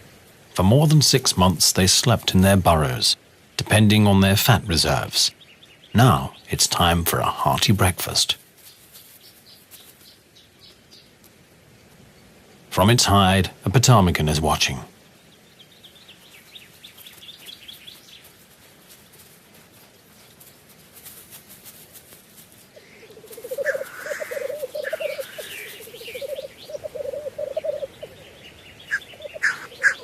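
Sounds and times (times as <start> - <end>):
small birds chirping: 4.5 - 13.4, 14.2 - 30.0
grouse hissing call: 22.8 - 28.2, 28.9 - 30.0
grouse bubbling song: 22.8 - 30.0.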